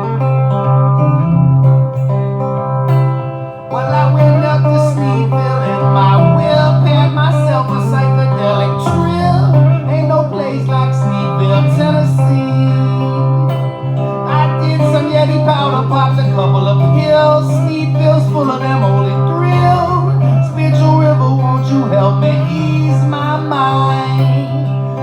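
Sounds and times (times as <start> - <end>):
plucked acoustic guitar: 0.0 - 25.0
low held note: 1.0 - 2.0.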